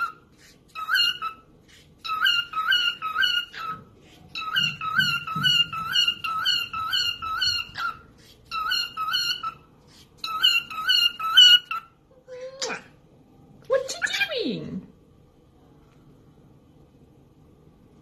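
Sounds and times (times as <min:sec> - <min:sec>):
parrot calling: 0:00.0 - 0:13.0.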